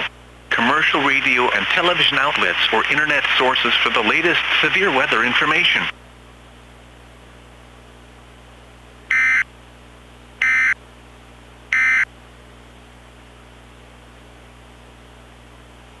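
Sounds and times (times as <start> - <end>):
low hiss and hum: 0.0 - 16.0
digital data tone bursts: 9.1 - 9.4, 10.4 - 10.8, 11.8 - 12.0.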